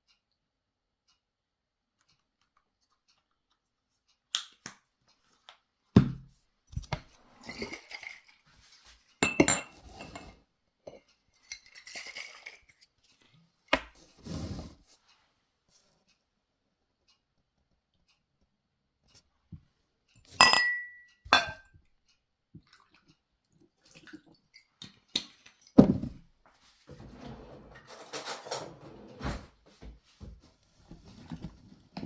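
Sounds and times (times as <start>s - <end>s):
dishes knocking and clinking: 9.2s - 11.1s, 20.3s - 21.7s.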